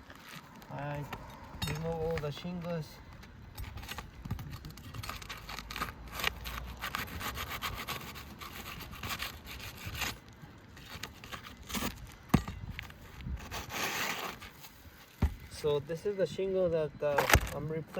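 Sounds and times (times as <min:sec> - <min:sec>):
roof shingles scraping: 0:03.6 - 0:15.5.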